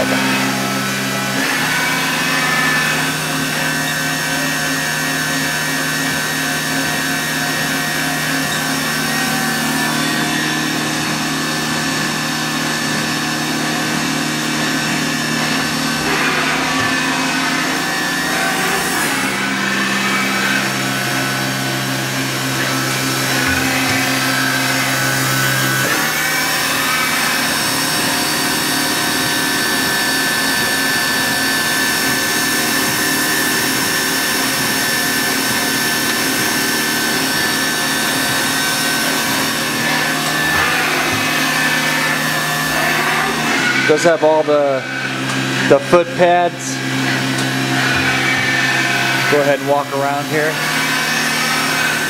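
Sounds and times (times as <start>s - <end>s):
high spindle whine: 0.0s - 52.0s
machining center motor hum: 0.0s - 52.0s.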